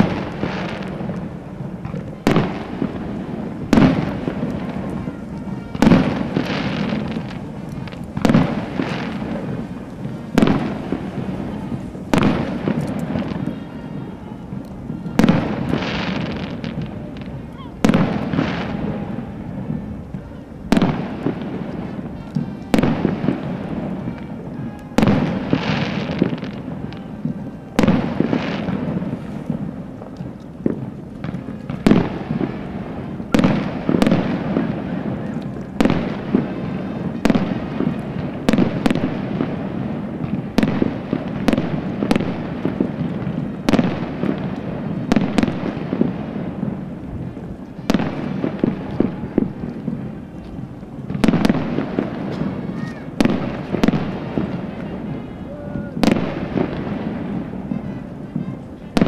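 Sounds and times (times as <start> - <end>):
firework crackle and rumble: 0.0 - 59.0
firework shells bursting: 0.0 - 59.0
music: 1.6 - 39.6, 56.2 - 59.0.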